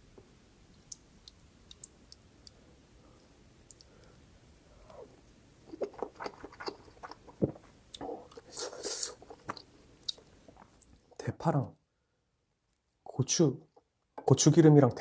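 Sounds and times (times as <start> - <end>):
wet chewing and lip smacks: 0.8 - 2.6, 5.7 - 11.0
noodle slurping: 5.7 - 9.6.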